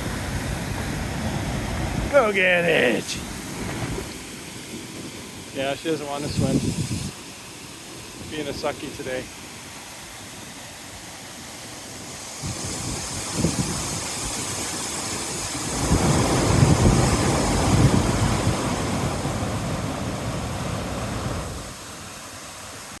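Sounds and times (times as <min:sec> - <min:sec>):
waterfall rushing water: 0:00.0 - 0:23.0.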